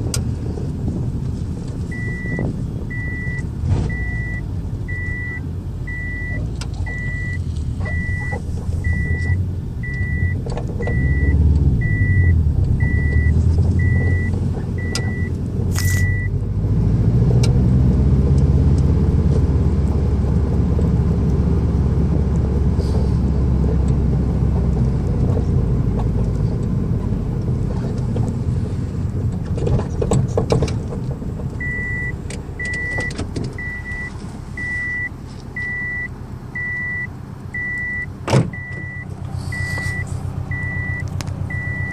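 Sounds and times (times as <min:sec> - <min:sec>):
car engine and road rumble: 0:00.0 - 0:41.9
repeating electronic beep: 0:02.0 - 0:16.3, 0:33.6 - 0:41.9.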